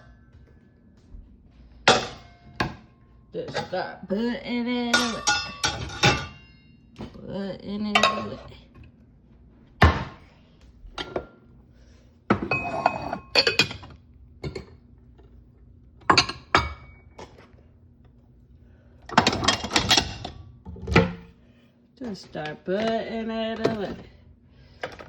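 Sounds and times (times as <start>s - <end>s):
dishes and cutlery clinking: 1.9s - 2.8s, 4.9s - 6.6s, 12.3s - 14.7s.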